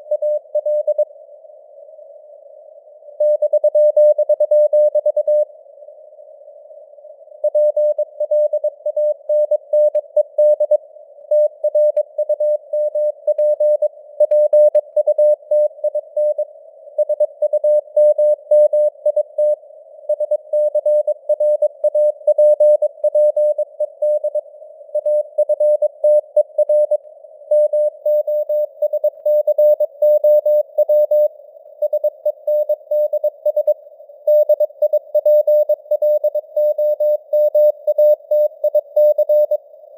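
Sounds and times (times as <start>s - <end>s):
morse code tone: 27.5s - 39.6s.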